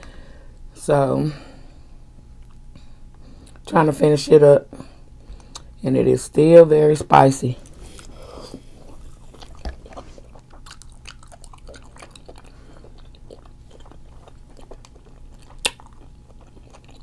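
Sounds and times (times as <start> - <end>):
chewing and biting food: 2.3 - 2.7, 7.6 - 17.0
wet mouth clicks: 8.8 - 17.0.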